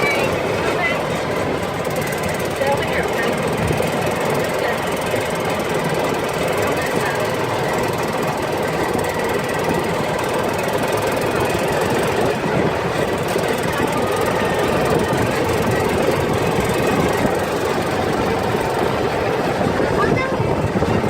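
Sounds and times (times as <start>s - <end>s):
off-road vehicle engine running: 0.0s - 21.0s
wind noise: 8.1s - 21.0s.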